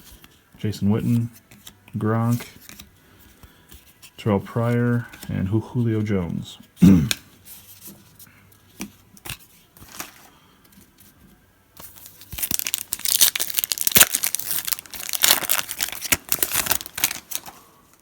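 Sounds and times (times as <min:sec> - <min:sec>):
wrapper tearing and crumpling: 0:11.8 - 0:17.6.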